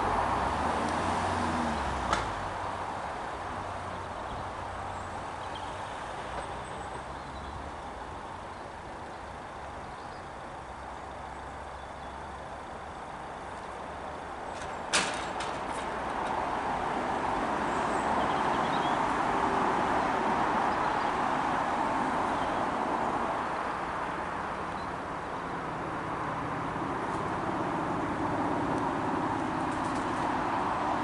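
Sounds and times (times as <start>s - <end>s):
sharp clunk: 14.6s - 16.0s.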